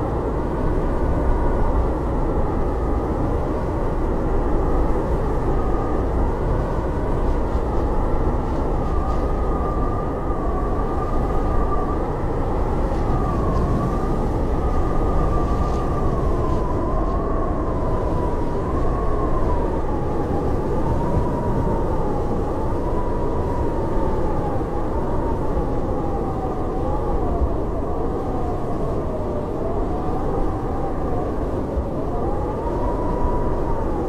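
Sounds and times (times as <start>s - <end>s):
howling blizzard wind: 0.0s - 34.0s.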